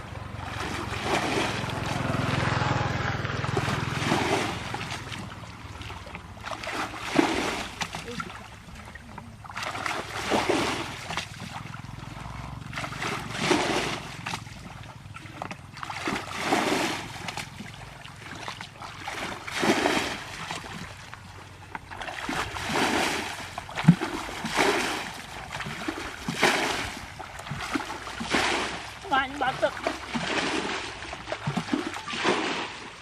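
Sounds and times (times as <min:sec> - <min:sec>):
water splashing and sloshing: 0:00.0 - 0:33.0.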